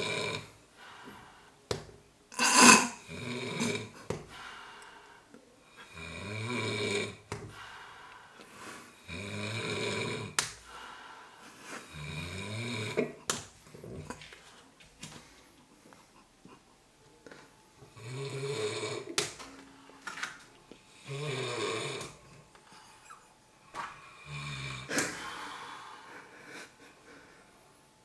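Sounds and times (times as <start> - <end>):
person snoring: 0.0 - 0.6, 2.4 - 4.0, 5.9 - 7.2, 9.0 - 10.4, 11.8 - 13.2, 18.0 - 19.2, 20.9 - 22.3, 24.0 - 25.9.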